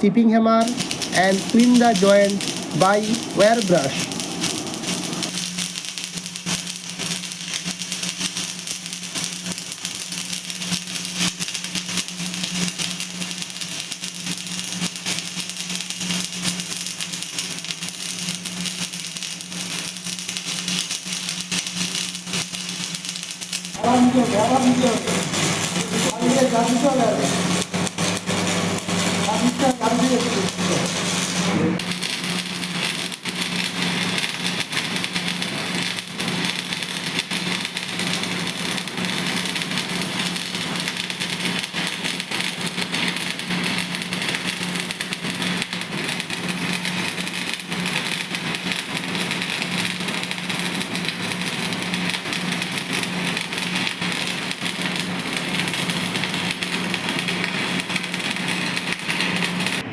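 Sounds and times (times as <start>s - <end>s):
low hum: 0.0s - 5.3s
welding arc crackling: 0.1s - 59.9s.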